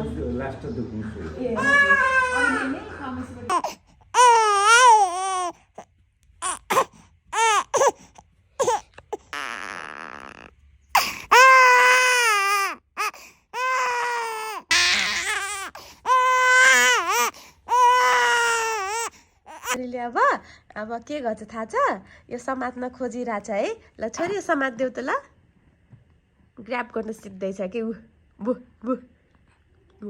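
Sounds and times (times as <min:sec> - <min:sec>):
infant crying: 0:01.6 - 0:05.8, 0:06.4 - 0:19.8.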